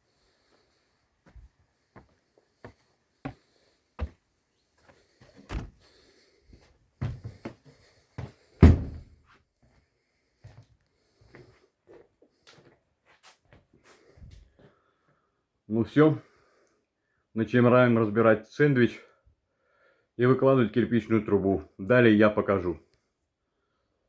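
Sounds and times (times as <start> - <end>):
knocks and thuds: 8.6 - 9.2.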